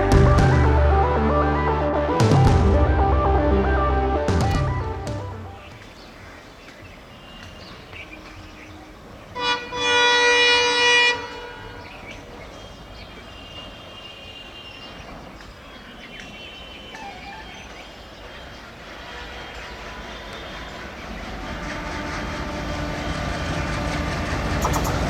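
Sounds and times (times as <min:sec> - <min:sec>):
train horn: 0:07.7 - 0:12.3, 0:18.3 - 0:25.0.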